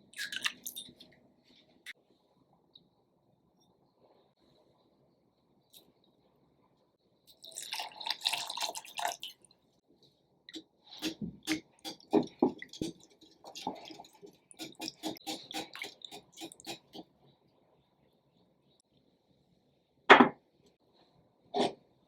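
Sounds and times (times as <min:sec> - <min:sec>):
utensil knocking: 0:14.6 - 0:17.0.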